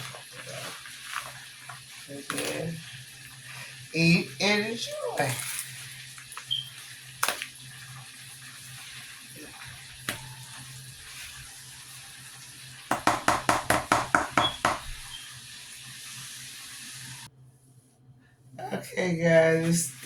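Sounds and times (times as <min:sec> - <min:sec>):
chicken sizzling in hot oil: 0:00.0 - 0:17.3
utensil tapping against pan: 0:12.9 - 0:15.1.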